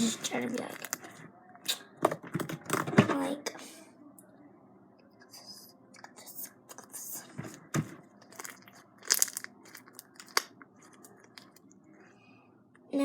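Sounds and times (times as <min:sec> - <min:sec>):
slime squishing and popping: 0:07.8 - 0:11.6.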